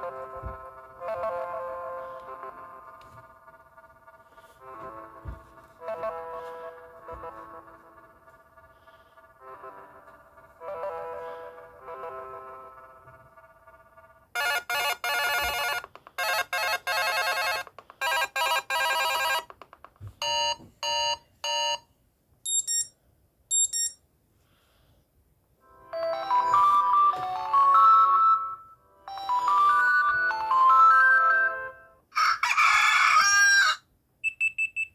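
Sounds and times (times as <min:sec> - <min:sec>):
buzzy trilling phone ring: 0:13.6 - 0:19.5
short beeps: 0:22.5 - 0:22.9, 0:23.5 - 0:24.0.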